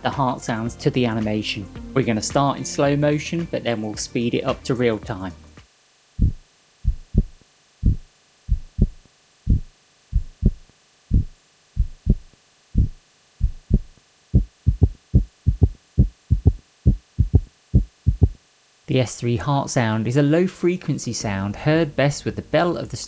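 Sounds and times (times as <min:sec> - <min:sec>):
heart sounds low thuds: 0:06.2 - 0:18.4.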